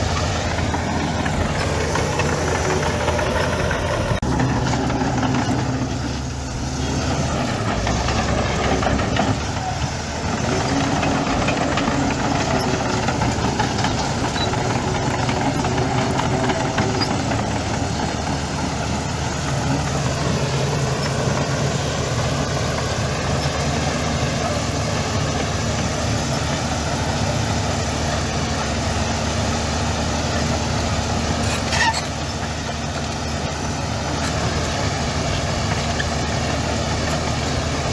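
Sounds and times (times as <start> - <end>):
heavy diesel engine running: 0.0 - 37.9.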